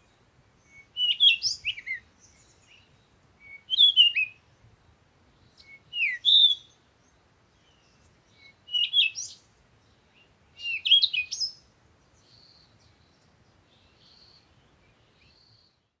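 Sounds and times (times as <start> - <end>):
songbird whistling phrases: 0.7 - 2.4, 3.4 - 4.4, 5.6 - 6.8, 8.4 - 9.4, 10.6 - 11.6.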